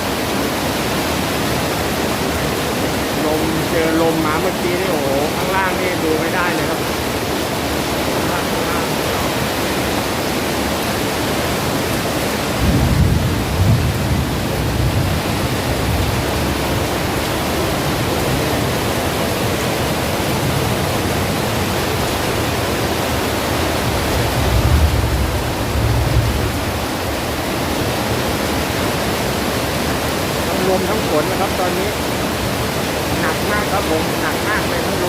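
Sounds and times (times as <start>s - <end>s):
heavy wind and rain: 0.0s - 35.0s
deep thunder rumbling: 11.6s - 22.0s, 23.8s - 28.2s.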